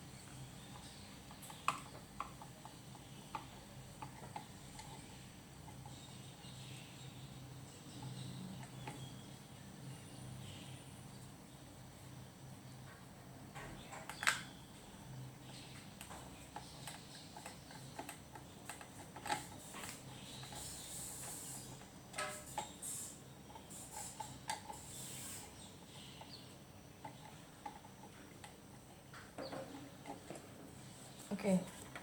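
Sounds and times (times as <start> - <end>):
small hard parts clicking: 15.4 - 26.4.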